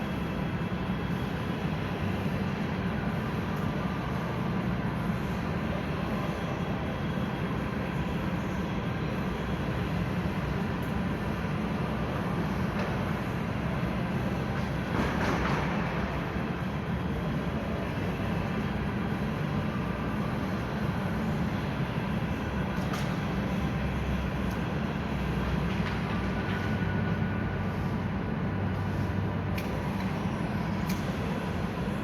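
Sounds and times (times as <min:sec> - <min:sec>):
low mechanical rumble: 0:00.0 - 0:32.0.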